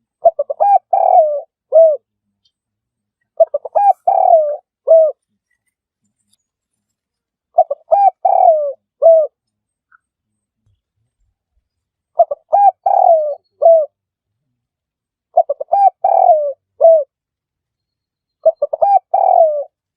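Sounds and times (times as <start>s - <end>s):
dove cooing: 0.2s - 2.1s, 3.4s - 5.2s, 7.5s - 9.4s, 12.2s - 14.0s, 15.3s - 17.1s, 18.4s - 19.8s.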